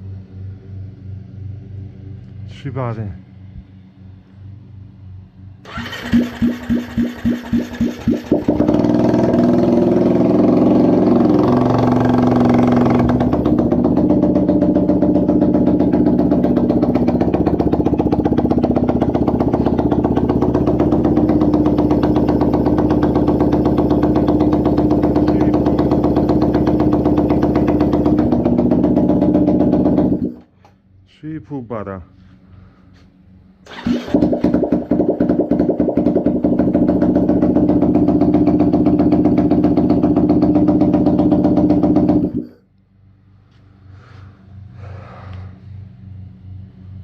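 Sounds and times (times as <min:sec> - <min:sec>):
motorcycle engine idling: 0:03.7 - 0:30.8, 0:32.2 - 0:42.7
motorcycle engine cranking: 0:05.7 - 0:30.5, 0:33.6 - 0:42.6.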